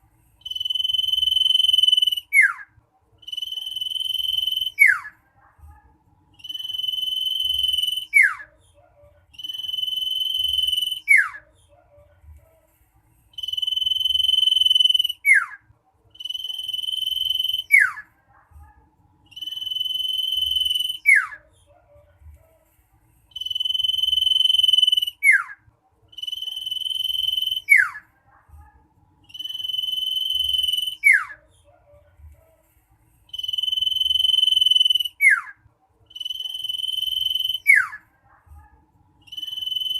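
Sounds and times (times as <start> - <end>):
bird whistling song: 0.4 - 5.1, 6.4 - 8.5, 9.4 - 11.4, 13.3 - 15.6, 16.2 - 18.0, 19.3 - 21.4, 23.3 - 28.0, 29.3 - 31.4, 33.3 - 38.0, 39.3 - 39.9.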